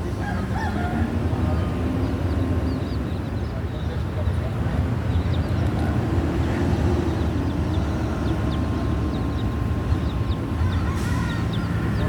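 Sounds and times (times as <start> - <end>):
baby chicks peeping: 1.5 - 4.4, 6.9 - 12.0.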